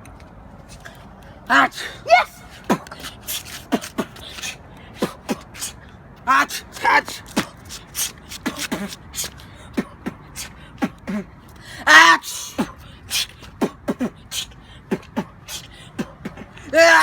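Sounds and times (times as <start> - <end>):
beatboxing mouth clicks and puffs: 2.6 - 5.8, 6.7 - 11.6, 12.4 - 16.7.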